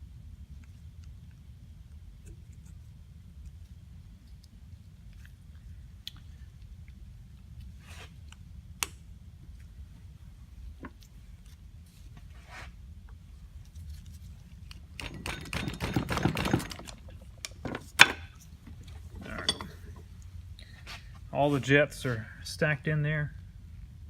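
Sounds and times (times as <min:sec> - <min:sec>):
metal parts clattering: 0:15.0 - 0:17.8, 0:19.2 - 0:19.9.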